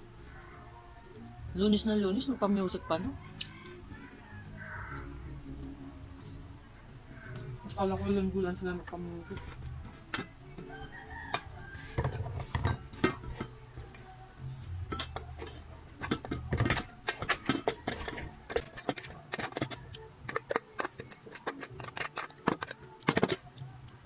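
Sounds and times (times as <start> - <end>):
faint background music: 0.0 - 24.0
cutlery clinking on dishes: 10.1 - 14.0, 14.9 - 23.5.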